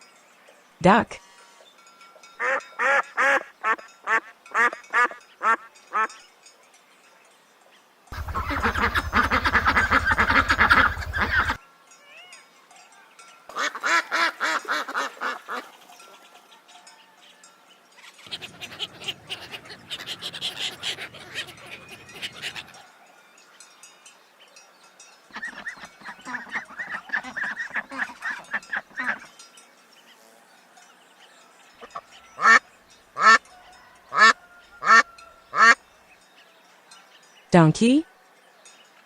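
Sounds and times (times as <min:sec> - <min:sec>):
ducks quacking: 0:08.2 - 0:11.6, 0:13.5 - 0:15.8, 0:18.2 - 0:22.8, 0:25.3 - 0:29.3, 0:32.4 - 0:32.6, 0:33.2 - 0:33.4, 0:35.6 - 0:35.8.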